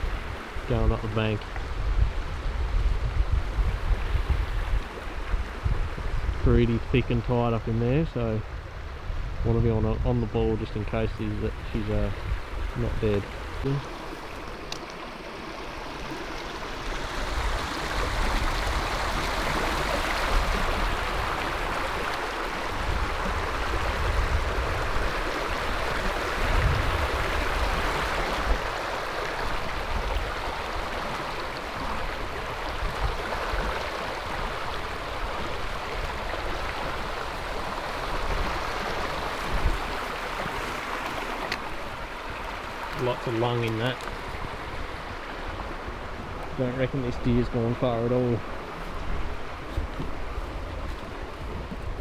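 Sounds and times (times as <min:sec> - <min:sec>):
creek water running: 0:00.0 - 0:52.0.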